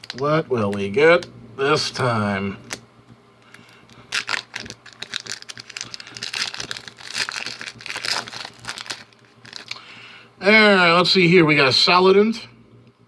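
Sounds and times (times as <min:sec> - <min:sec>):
foil wrapper crackling: 0:00.0 - 0:00.9, 0:03.4 - 0:09.9.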